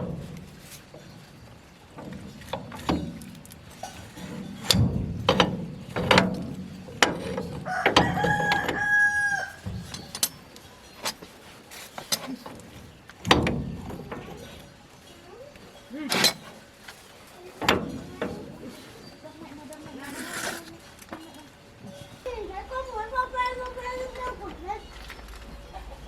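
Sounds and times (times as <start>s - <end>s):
metal clanks and knocks: 0.0s - 15.3s, 15.9s - 19.2s
rooster crowing: 7.6s - 9.7s.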